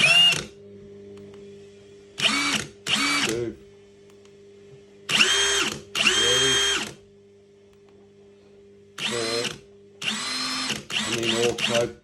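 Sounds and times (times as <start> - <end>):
impact wrench whining and hammering: 2.2 - 3.4, 5.1 - 7.0, 9.0 - 11.9.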